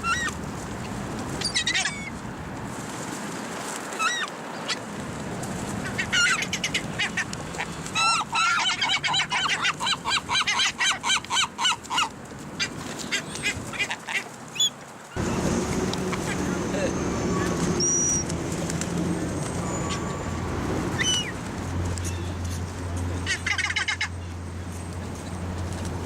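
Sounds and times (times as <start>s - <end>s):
birds calling: 14.6s - 25.4s
repeated honking calls: 15.2s - 21.4s.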